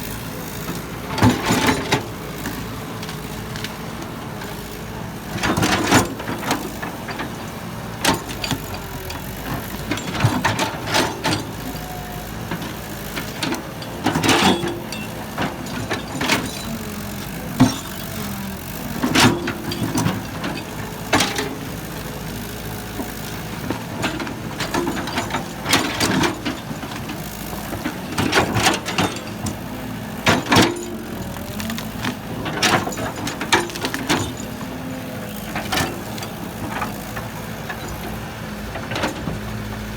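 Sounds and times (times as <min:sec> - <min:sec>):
heavy construction machinery running: 0:00.0 - 0:39.9
metal clanks and knocks: 0:23.0 - 0:34.8.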